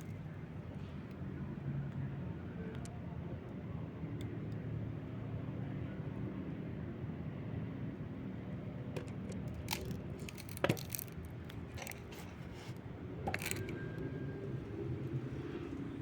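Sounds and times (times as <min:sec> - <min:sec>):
light clicks and scrapes: 0:09.0 - 0:14.1.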